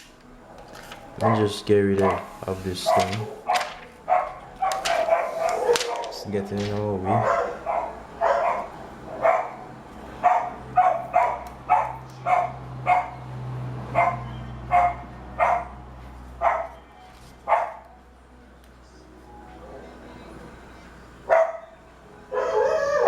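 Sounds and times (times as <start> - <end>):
dog barking: 1.2 - 6.4, 7.1 - 13.2, 13.9 - 15.8, 16.4 - 16.8, 17.5 - 17.8, 21.3 - 23.0.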